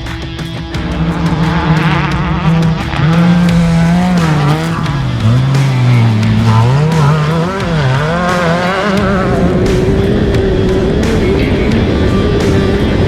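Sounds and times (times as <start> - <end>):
race car engine revving: 0.0 - 13.0.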